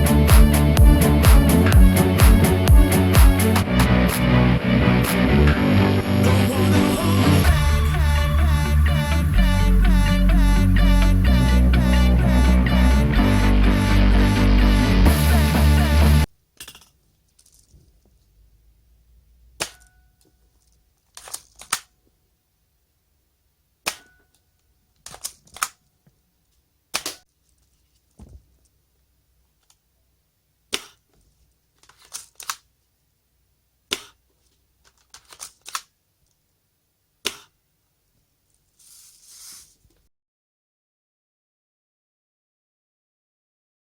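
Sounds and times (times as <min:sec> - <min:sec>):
soft hiss: 0:36.1 - 0:40.1.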